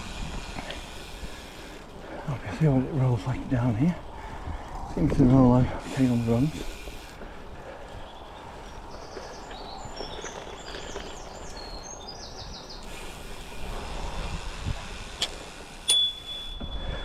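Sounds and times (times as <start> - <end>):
bike tyres rolling on gravel: 0.0 - 17.0
wind on microphone: 3.3 - 11.6, 12.4 - 15.6
bird singing: 7.7 - 13.0
thin high tone: 15.9 - 17.0.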